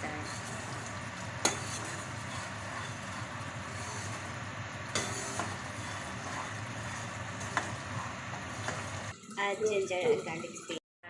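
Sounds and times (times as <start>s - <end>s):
paste sizzling in hot oil: 0.0s - 10.1s.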